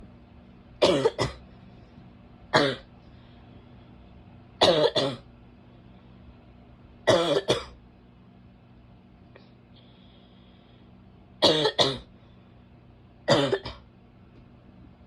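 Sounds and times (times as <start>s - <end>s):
woman's barking cough: 0.8s - 1.4s, 2.6s - 2.9s, 4.6s - 5.2s, 7.1s - 7.8s, 11.4s - 12.1s, 13.3s - 13.8s.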